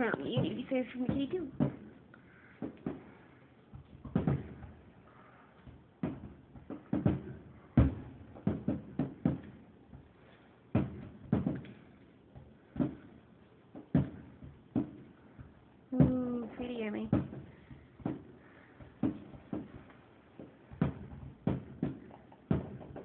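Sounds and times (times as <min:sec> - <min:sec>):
muffled fireworks booms: 0:00.0 - 0:03.2, 0:04.0 - 0:04.8, 0:05.7 - 0:10.0, 0:10.7 - 0:11.7.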